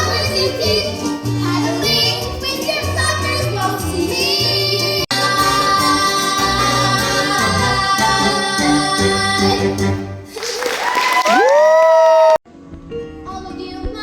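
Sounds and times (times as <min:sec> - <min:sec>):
voices singing held notes: 0:04.0 - 0:10.2
orchestral accompaniment: 0:05.1 - 0:10.3.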